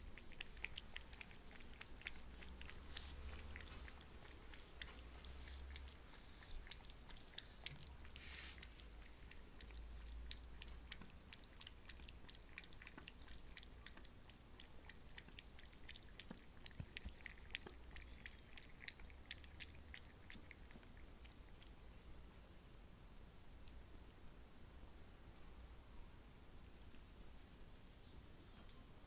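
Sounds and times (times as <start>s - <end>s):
cat lapping water: 0.0s - 22.1s.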